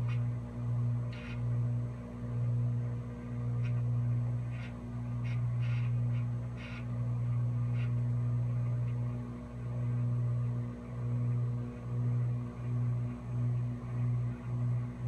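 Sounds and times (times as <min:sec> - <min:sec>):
microwave oven humming: 0:00.0 - 0:15.0.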